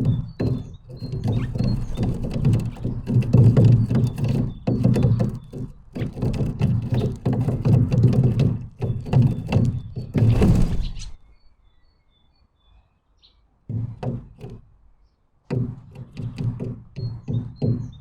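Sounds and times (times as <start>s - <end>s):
knocks and thumps on bird feeder: 0.0s - 11.2s, 13.7s - 14.8s, 15.4s - 18.0s
faint high bird chirps: 8.8s - 13.5s.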